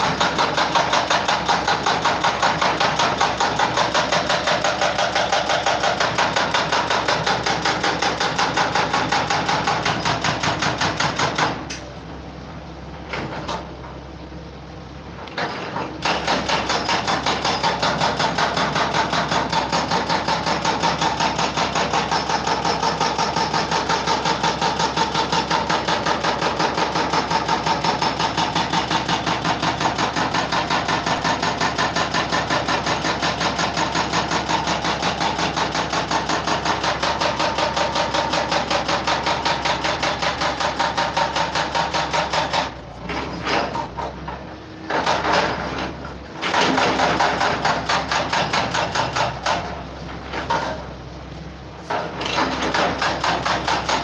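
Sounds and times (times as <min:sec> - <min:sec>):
scattered knocks: 0:29.8 - 0:42.7.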